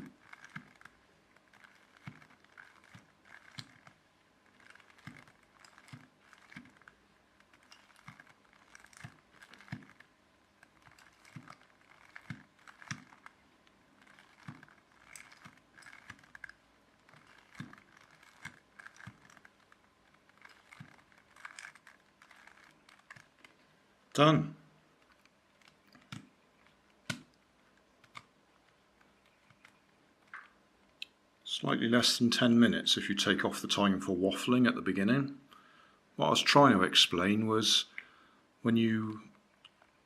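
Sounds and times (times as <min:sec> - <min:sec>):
puzzle cube clicking: 0:14.0 - 0:23.6.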